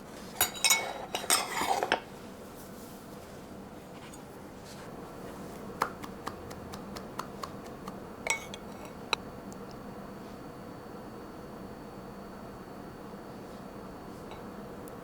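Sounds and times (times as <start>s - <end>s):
cutlery clinking against dishes: 0.4s - 2.1s, 8.3s - 9.0s.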